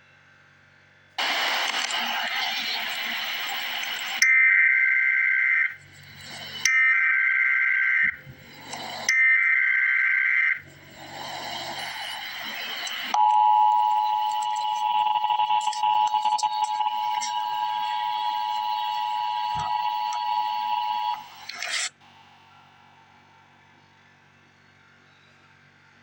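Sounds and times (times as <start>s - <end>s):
shrill data tones: 1.2s - 22.0s
two-tone alert beep: 13.1s - 21.2s.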